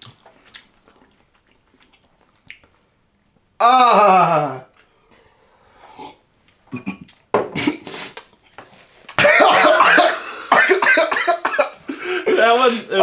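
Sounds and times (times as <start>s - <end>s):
person coughing and hacking: 6.7s - 7.9s, 9.2s - 12.5s.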